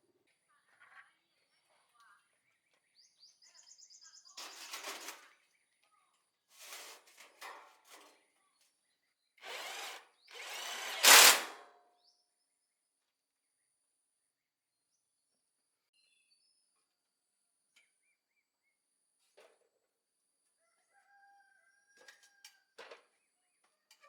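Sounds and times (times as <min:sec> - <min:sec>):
power tool bursts: 0:09.4 - 0:11.6.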